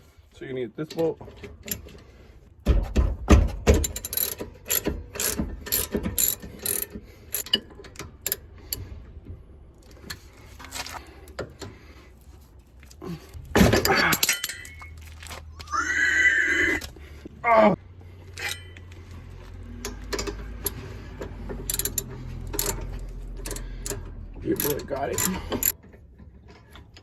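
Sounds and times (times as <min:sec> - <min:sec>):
ratchet wrench clicking: 0:03.8 - 0:08.8, 0:19.8 - 0:25.8
metal clattering: 0:13.3 - 0:15.5.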